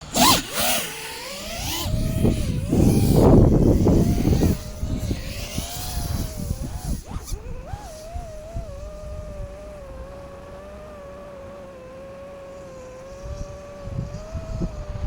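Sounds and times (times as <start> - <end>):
drone motors whining: 0.0 - 15.0
wind rumble on microphone: 1.3 - 11.0, 13.0 - 15.0.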